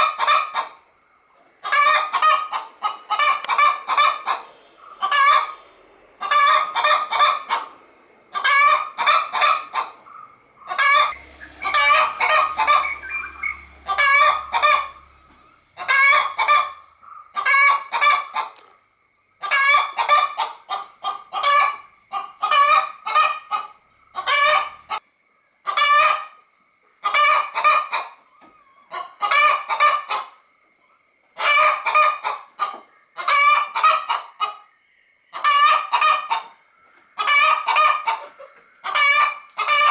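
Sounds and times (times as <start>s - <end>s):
hen clucking: 0.0s - 0.8s, 1.6s - 18.7s, 19.4s - 25.0s, 31.4s - 34.6s, 35.4s - 36.6s, 37.2s - 39.9s.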